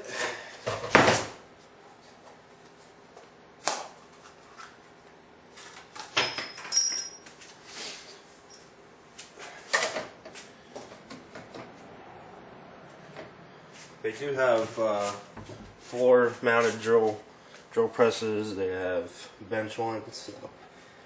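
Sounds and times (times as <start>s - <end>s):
metallic ring: 6.3s - 7.3s.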